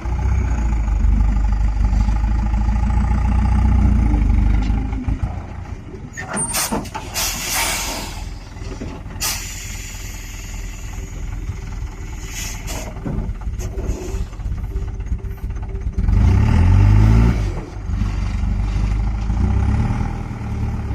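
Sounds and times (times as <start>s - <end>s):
truck diesel engine running: 0.0s - 20.9s
air brakes hissing: 6.4s - 8.4s, 9.2s - 11.3s, 12.1s - 13.0s.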